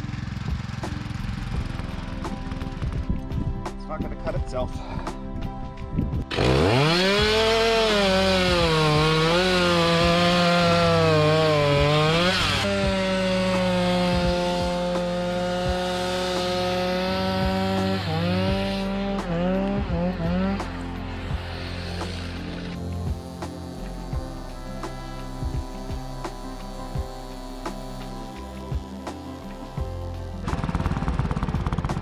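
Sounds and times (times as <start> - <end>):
small gasoline engine revving: 6.2 - 29.0.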